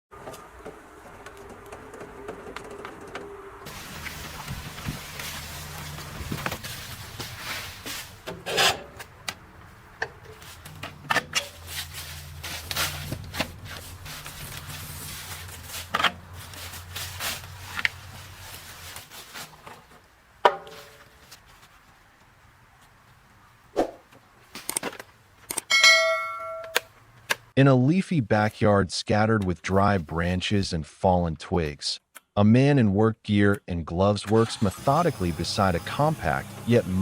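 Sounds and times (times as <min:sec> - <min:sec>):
machine engine hum: 0:00.2 - 0:08.4.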